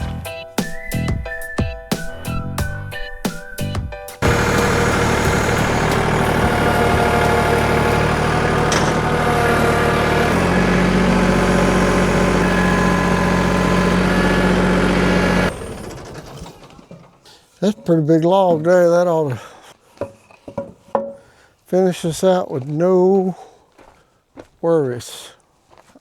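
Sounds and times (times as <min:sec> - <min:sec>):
engine running: 0:04.2 - 0:17.2.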